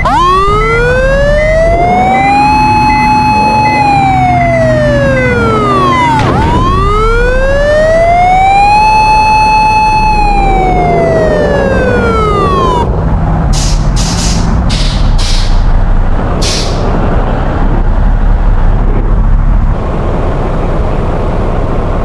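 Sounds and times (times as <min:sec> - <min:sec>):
bus horn siren wailing: 0:00.0 - 0:13.0.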